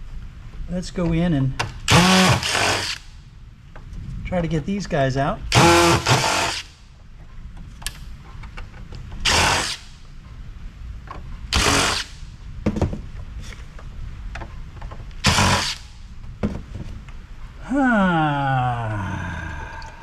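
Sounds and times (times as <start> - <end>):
power drill bursts: 1.9 - 3.0, 5.5 - 6.7, 9.2 - 9.9, 11.5 - 12.2, 15.2 - 16.0.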